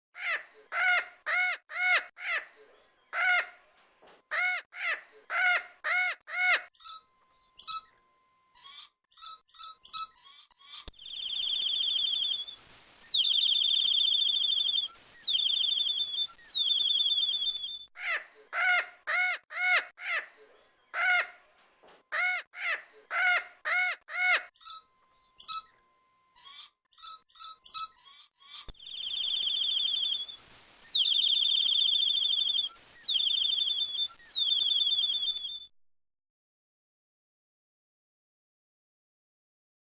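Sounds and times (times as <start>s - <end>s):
loud parrot calls: 0.2s - 2.5s, 3.1s - 3.6s, 4.3s - 6.7s, 18.0s - 20.3s, 22.1s - 24.8s
rapid high trilled chirping: 6.8s - 8.0s, 8.6s - 12.6s, 13.2s - 17.8s, 24.6s - 25.7s, 26.4s - 30.4s, 31.0s - 35.7s
high short chirps: 24.6s - 25.7s, 26.4s - 28.7s.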